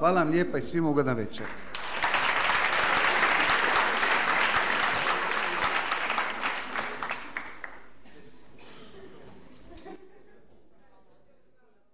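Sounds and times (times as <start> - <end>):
audience applauding: 1.6 - 7.9.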